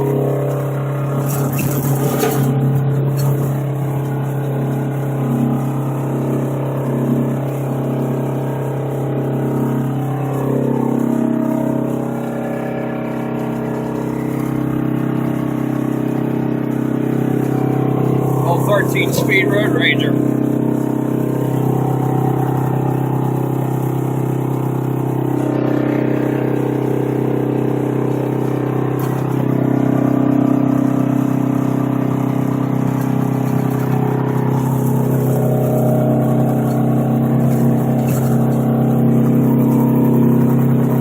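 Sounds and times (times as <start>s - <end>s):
diesel truck engine running: 0.0s - 41.0s.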